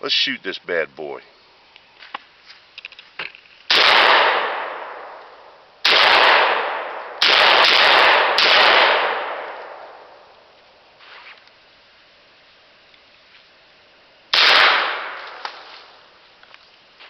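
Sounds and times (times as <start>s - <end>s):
shotgun shots echoing: 3.7s - 5.2s, 5.8s - 10.2s, 14.3s - 16.0s.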